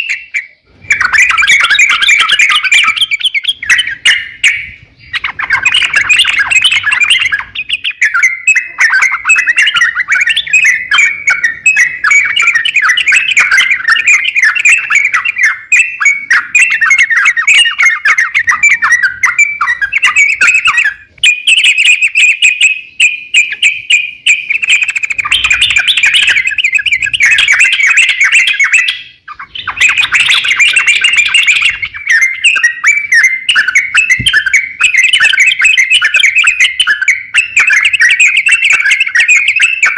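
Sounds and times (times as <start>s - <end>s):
bulbul chattering chirps: 0.0s - 39.9s.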